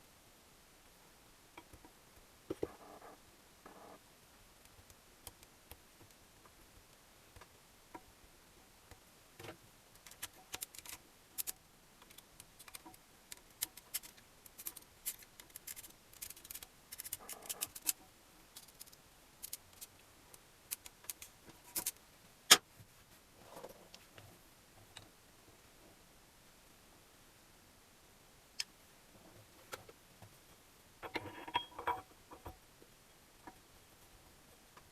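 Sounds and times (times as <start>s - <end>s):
small metal parts clinking: 13.7s - 18.0s.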